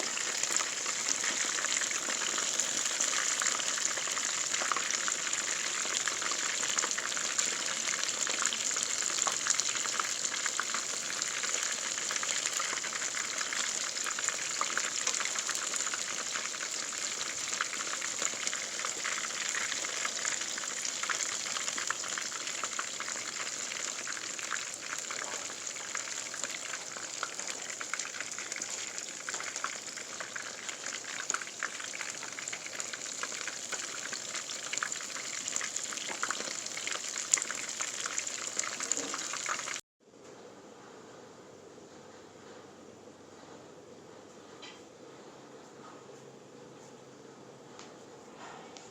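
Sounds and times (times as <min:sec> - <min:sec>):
food deep-frying in hot oil: 0:00.0 - 0:39.8.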